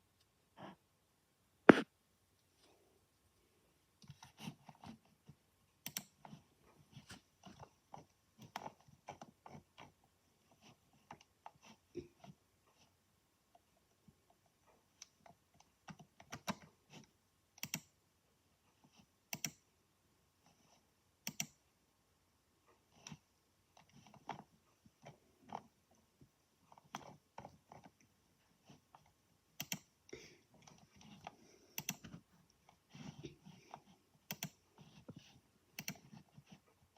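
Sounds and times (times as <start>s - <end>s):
computer clicking and crunching: 28.7s - 30.0s, 30.6s - 36.6s.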